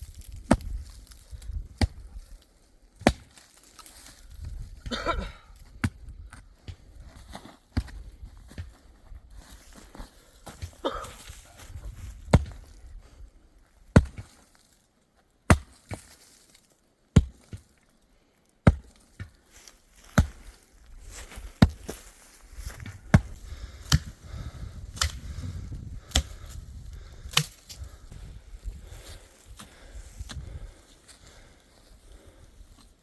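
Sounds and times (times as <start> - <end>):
dry wood being chopped: 0.3 - 0.8, 1.7 - 2.0, 3.0 - 3.5, 12.3 - 12.7, 13.9 - 14.4, 15.5 - 16.2, 17.2 - 17.7, 18.6 - 19.4, 20.1 - 20.6, 21.6 - 21.9, 22.9 - 24.2, 24.9 - 25.3, 26.0 - 27.8.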